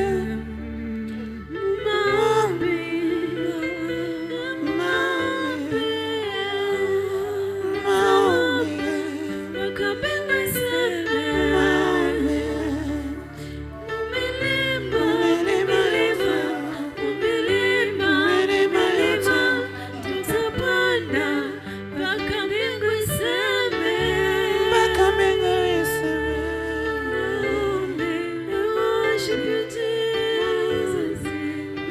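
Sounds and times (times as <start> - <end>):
person singing: 0.0 - 31.9.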